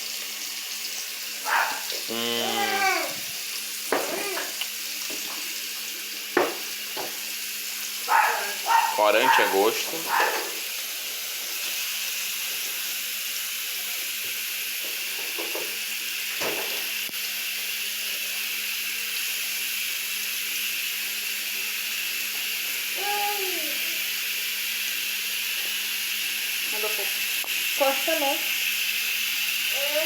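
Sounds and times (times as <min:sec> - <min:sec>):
food sizzling in a pan: 0:00.0 - 0:30.0
faint voice: 0:01.5 - 0:03.2.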